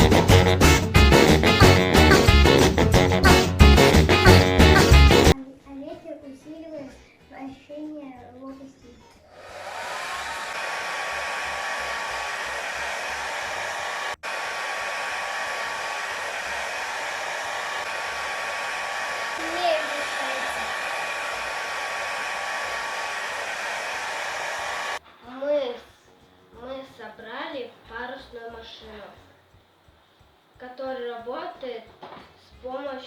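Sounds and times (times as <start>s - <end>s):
electric air blower running: 9.4s - 25.0s.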